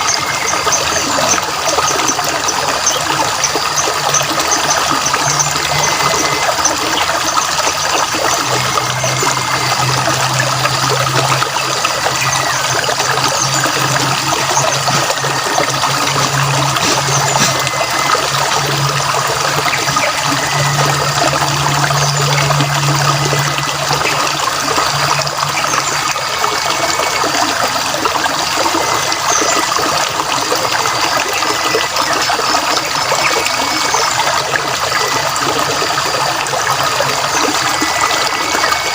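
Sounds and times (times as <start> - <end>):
stream water trickling: 0.0 - 38.9.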